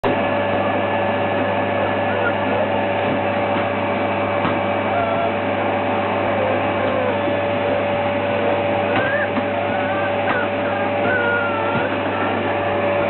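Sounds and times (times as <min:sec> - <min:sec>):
vacuum cleaner running: 0:00.0 - 0:13.0.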